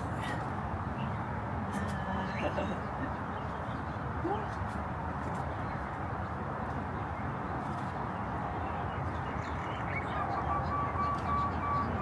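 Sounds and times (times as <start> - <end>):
outdoor background noise: 0.0 - 12.0
bird chirp: 8.6 - 12.0.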